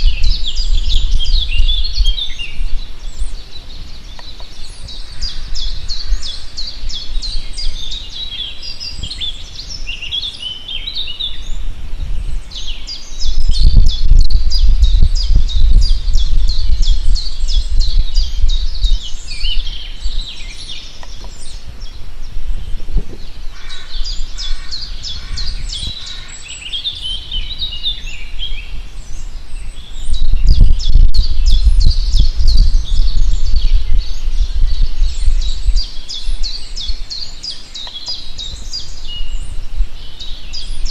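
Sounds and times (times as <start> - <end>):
bird low notes: 0.0 - 40.9
birds chirping and singing: 0.0 - 40.9.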